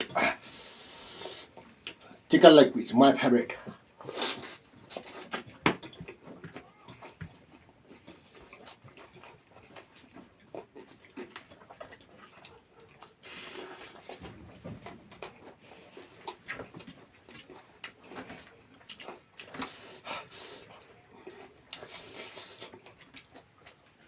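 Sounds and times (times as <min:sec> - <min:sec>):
mouth clicks and lip smacks: 0:00.0 - 0:02.2, 0:03.6 - 0:14.2
wet chewing: 0:00.0 - 0:02.3, 0:03.6 - 0:24.0.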